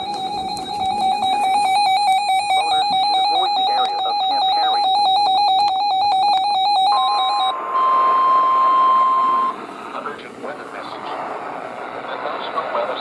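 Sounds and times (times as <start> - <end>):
warbling electronic alert beep: 0.0 - 9.6
steady warning alarm tone: 0.0 - 13.0.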